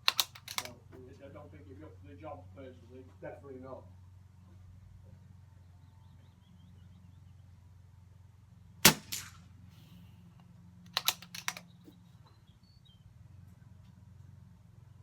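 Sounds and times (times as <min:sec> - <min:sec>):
air rifle firing: 0:00.0 - 0:00.7, 0:08.8 - 0:09.9, 0:11.0 - 0:11.6
sharp clicks: 0:00.0 - 0:00.8, 0:10.9 - 0:12.0.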